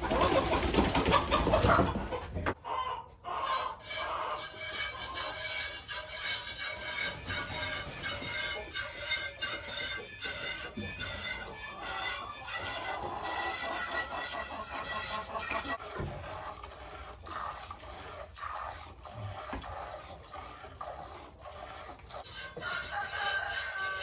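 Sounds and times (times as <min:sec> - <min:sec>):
chickens clucking: 0:00.0 - 0:04.4, 0:11.4 - 0:16.1.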